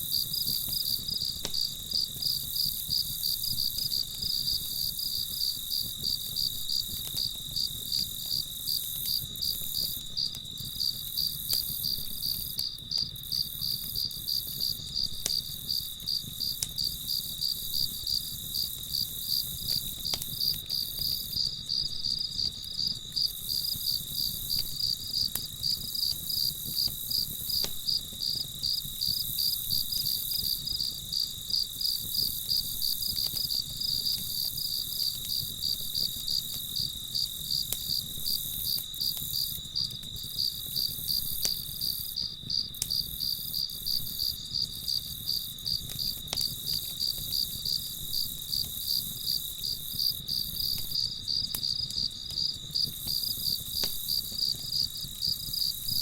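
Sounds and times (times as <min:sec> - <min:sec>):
crickets chirping: 0:00.1 - 0:56.0
faint ticks: 0:01.4 - 0:02.4, 0:11.5 - 0:14.0, 0:14.6 - 0:15.6, 0:19.7 - 0:21.2, 0:23.6 - 0:27.8, 0:33.1 - 0:41.6, 0:45.9 - 0:47.6, 0:50.0 - 0:54.6.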